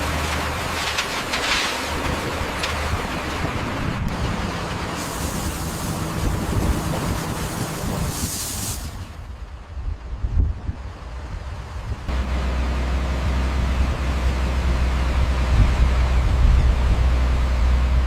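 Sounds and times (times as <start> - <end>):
construction machinery engine hum: 0.0 - 18.0
brief high hiss: 5.0 - 9.2.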